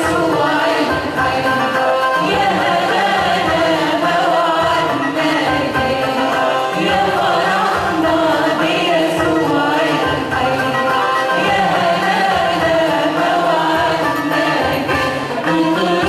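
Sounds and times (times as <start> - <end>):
choir singing a hymn: 0.0 - 16.0.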